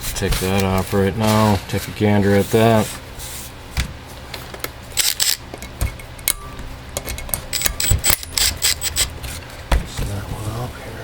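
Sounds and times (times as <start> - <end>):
metal tools clinking: 5.0 - 9.2.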